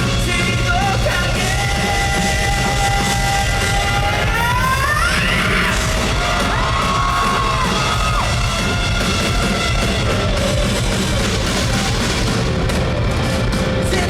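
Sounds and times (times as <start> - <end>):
live rock band playing: 0.0 - 14.0.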